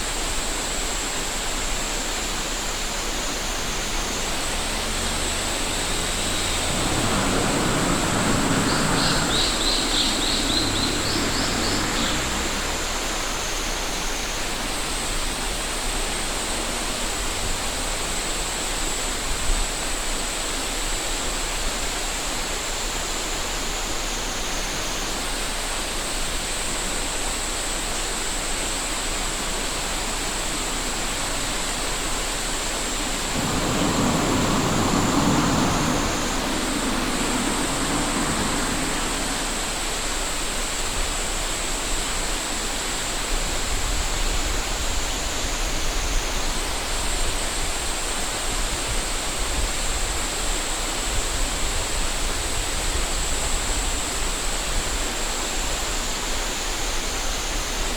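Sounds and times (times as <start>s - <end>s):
river rushing: 0.0s - 19.1s, 26.0s - 45.8s
vehicle passing: 3.7s - 13.9s, 30.7s - 41.2s
cicada buzzing: 3.9s - 13.1s, 32.7s - 40.4s.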